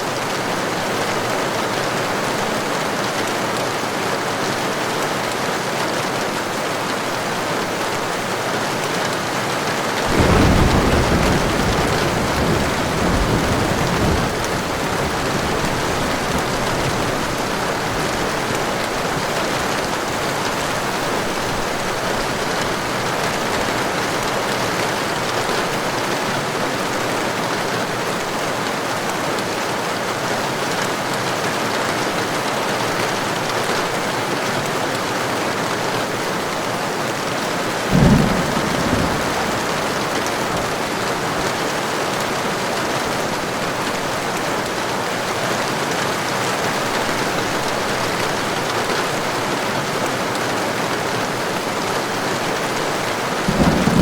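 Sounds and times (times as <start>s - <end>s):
heavy rain falling: 0.0s - 54.0s
thunder clap and rumble: 10.0s - 19.8s, 37.8s - 41.5s, 53.4s - 54.0s.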